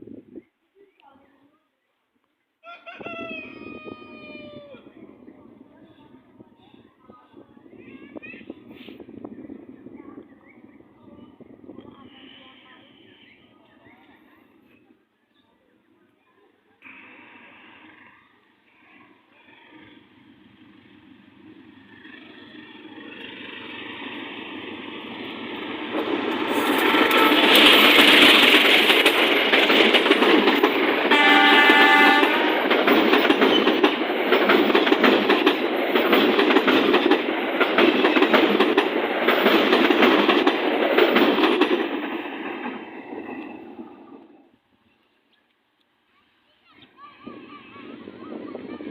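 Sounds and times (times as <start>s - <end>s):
passenger train passing: 3.4s - 14.9s, 17.1s - 45.3s, 47.1s - 48.9s
locomotive horn: 26.8s - 27.8s, 31.1s - 32.7s.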